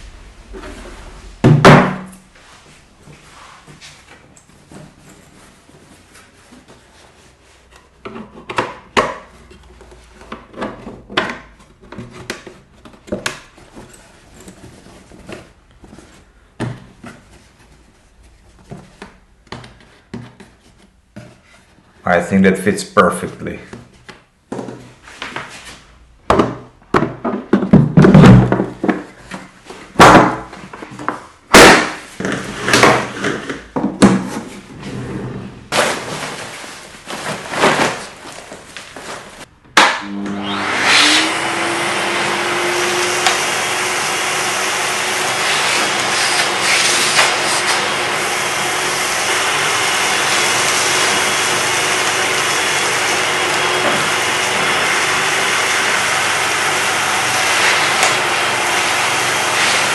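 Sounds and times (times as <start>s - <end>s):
knocks and thumps from handling: 26.2s - 31.3s
vacuum cleaner motor running: 40.0s - 59.9s.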